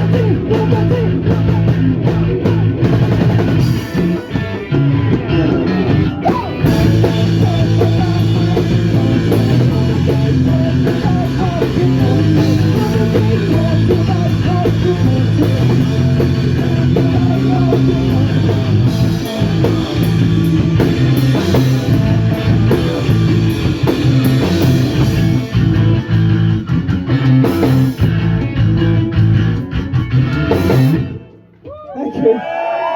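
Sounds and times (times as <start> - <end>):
distorted electric guitar: 0.0 - 31.5
drum kit: 0.0 - 31.5
punk rock band playing: 0.0 - 31.7
person singing: 6.1 - 20.3.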